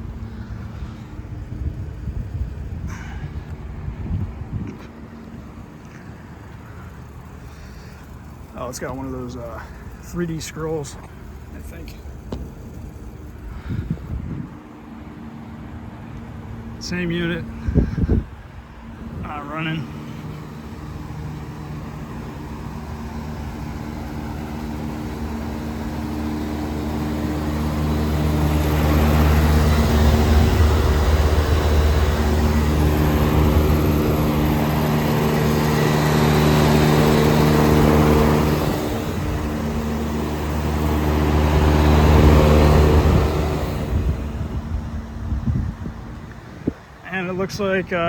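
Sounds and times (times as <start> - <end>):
compressor electrical hum: 0.0 - 48.0
fan air rushing: 0.0 - 48.0.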